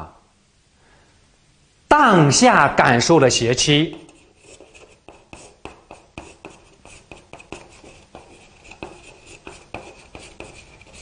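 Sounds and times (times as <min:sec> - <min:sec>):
pen scratching while handwriting: 0:03.9 - 0:11.0.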